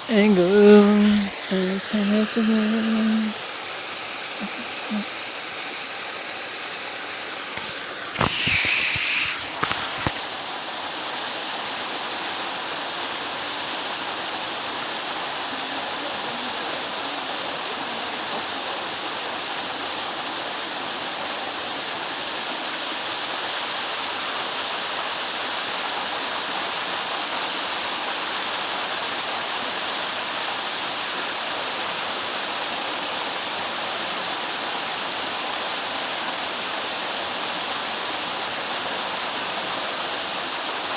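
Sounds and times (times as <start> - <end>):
burst of noise: 7.5 - 10.2.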